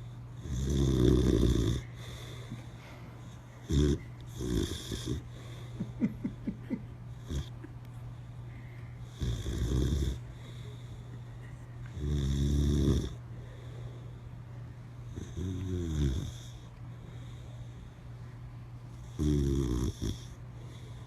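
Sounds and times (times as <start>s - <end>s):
dog snoring: 0.0s - 2.5s, 3.2s - 5.6s, 7.1s - 7.6s, 9.0s - 10.9s, 11.9s - 14.2s, 15.0s - 17.8s, 18.9s - 21.0s
steady low hum: 0.0s - 21.0s.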